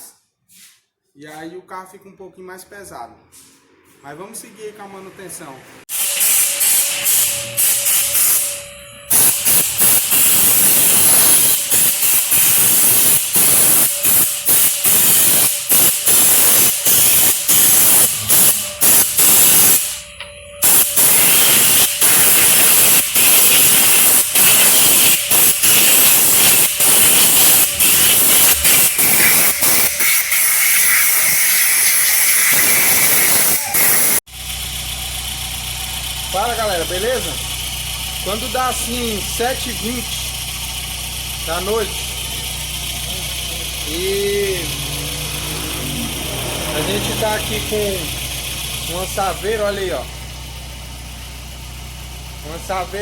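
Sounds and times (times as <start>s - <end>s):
pressure washer jet hissing: 5.9s - 8.5s, 9.1s - 34.2s, 38.4s - 50.4s.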